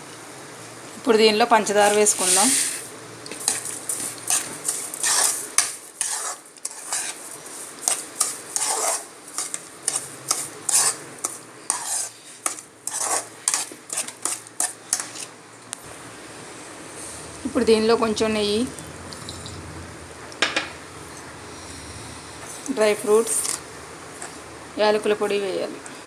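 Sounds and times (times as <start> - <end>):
spoon scraping and knocking pan: 3.4 - 7.2, 7.8 - 15.3.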